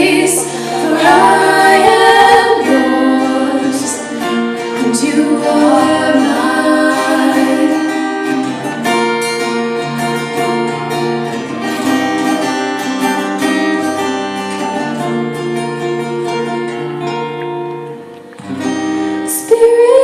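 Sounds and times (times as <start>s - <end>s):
acoustic guitar strumming: 0.0s - 20.0s.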